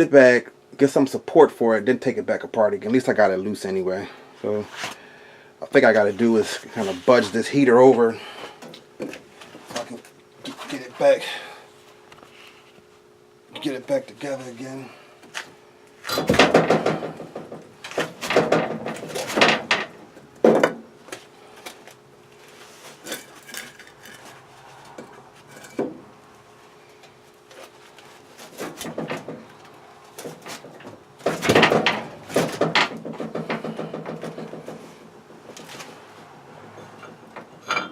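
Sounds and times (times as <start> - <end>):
faint steady hum: 0.0 - 37.9
heavy metal clanking and scraping: 36.7 - 37.9.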